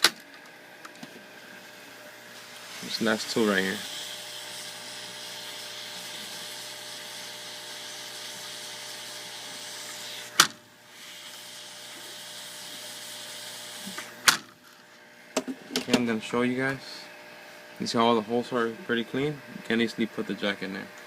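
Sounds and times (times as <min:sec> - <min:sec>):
faint motor hum: 0:00.0 - 0:21.0
hot air gun blowing: 0:02.3 - 0:14.4.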